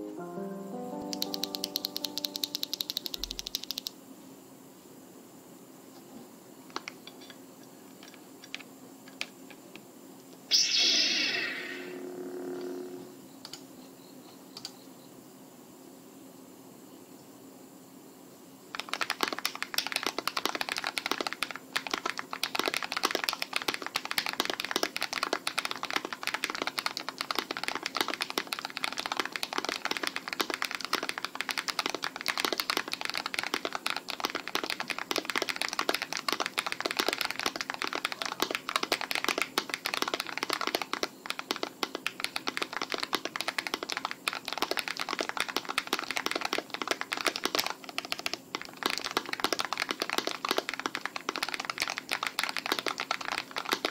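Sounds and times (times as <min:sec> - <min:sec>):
fast mechanical keyboard typing: 0:01.1 - 0:03.9, 0:18.7 - 0:53.9.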